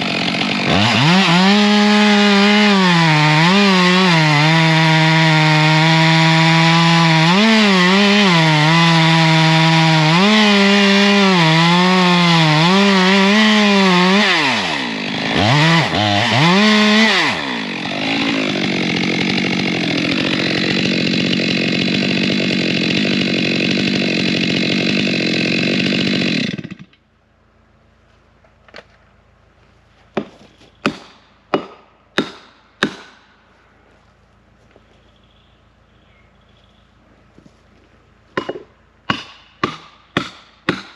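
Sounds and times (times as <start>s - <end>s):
chainsaw cutting wood: 0.0s - 27.0s, 30.2s - 33.4s, 38.4s - 40.9s
sharp hammer strikes: 30.8s - 33.2s, 38.4s - 40.9s.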